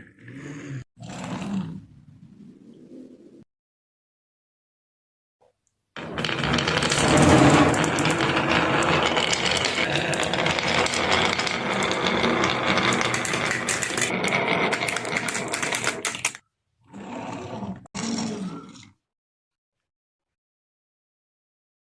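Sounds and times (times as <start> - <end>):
marbles rattling down wooden run: 6.0 - 16.4.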